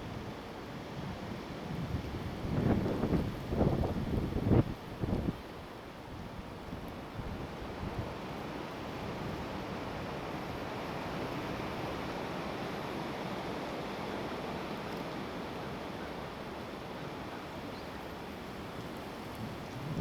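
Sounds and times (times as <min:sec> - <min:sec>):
strong gusting wind: 0:01.8 - 0:05.4, 0:19.4 - 0:20.0
wind bumps on microphone: 0:19.4 - 0:20.0.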